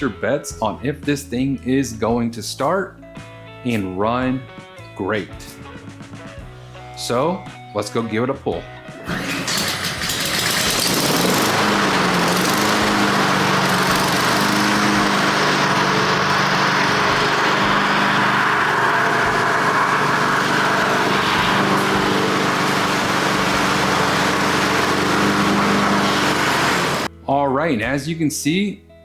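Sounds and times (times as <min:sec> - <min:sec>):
lawn mower engine running: 0:09.0 - 0:27.1.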